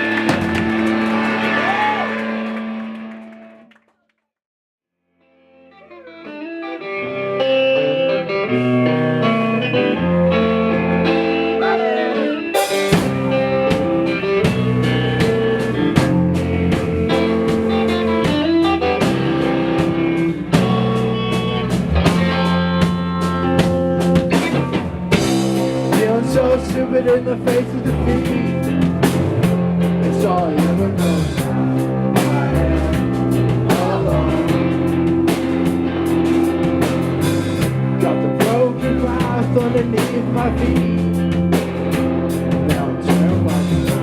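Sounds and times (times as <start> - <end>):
drum kit: 0.0 - 3.0, 12.4 - 44.0
rock band playing: 0.0 - 3.6, 5.6 - 44.0
bass guitar: 0.0 - 3.7, 5.6 - 44.0
guitar chords: 5.2 - 44.0.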